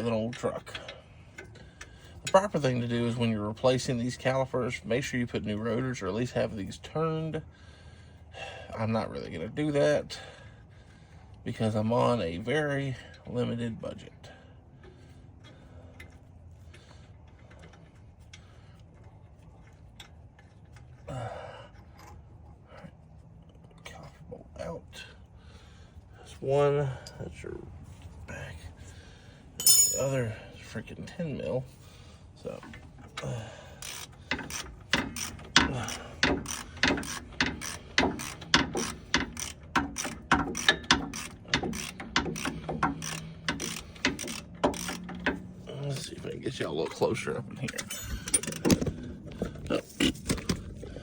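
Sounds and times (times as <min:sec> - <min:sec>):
low steady hum: 0:14.1 - 0:37.4, 0:43.1 - 0:51.0
wrench clicking on bolt: 0:33.8 - 0:45.4.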